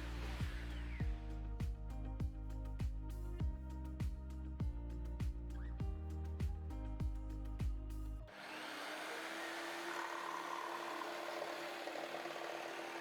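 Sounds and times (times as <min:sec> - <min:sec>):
background music with a beat: 0:00.0 - 0:08.2
electric jigsaw running: 0:08.3 - 0:13.0.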